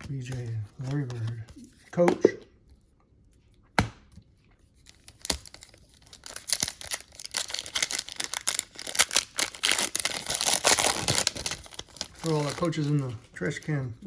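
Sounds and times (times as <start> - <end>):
packaging crinkling: 4.8 - 13.3.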